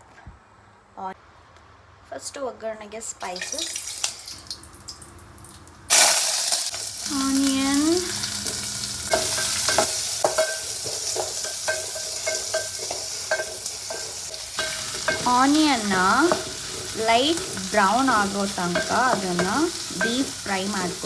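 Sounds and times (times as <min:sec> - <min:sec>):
hot oil sizzling: 0:03.2 - 0:21.0
ladle clinking against pot: 0:08.4 - 0:21.0.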